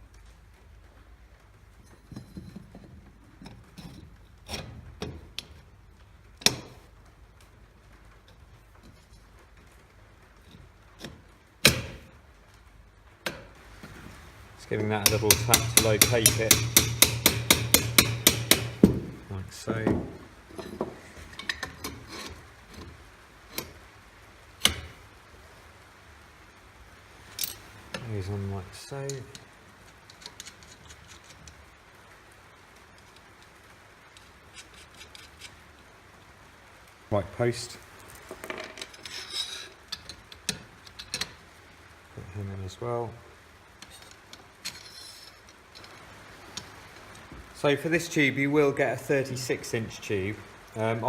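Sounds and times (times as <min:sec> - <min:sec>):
sharp metal knocks: 0:11.6 - 0:12.1, 0:14.9 - 0:19.2
metal parts clicking: 0:21.3 - 0:22.9, 0:27.4 - 0:27.6, 0:29.1 - 0:31.6, 0:38.4 - 0:41.4, 0:43.8 - 0:47.3
metal pieces knocking and clanking: 0:38.3 - 0:41.4, 0:43.8 - 0:47.1.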